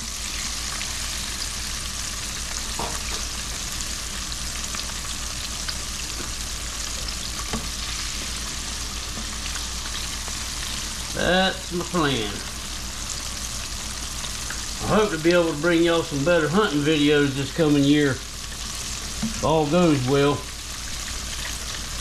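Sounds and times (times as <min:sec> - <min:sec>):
deep-frying sizzle with pops: 0:00.0 - 0:22.0.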